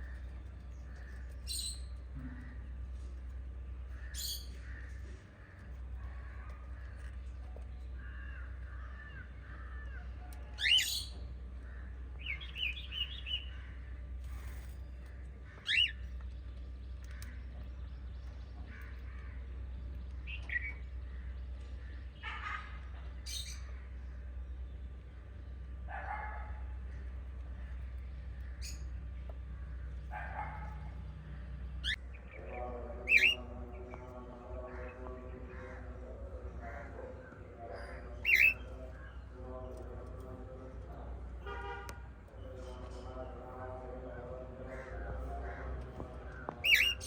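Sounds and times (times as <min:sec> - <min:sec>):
parrots chirping: 0:00.9 - 0:02.6, 0:03.9 - 0:11.3, 0:15.6 - 0:16.1, 0:22.2 - 0:23.8, 0:31.7 - 0:32.3, 0:33.0 - 0:33.9, 0:36.6 - 0:39.9, 0:44.7 - 0:47.0.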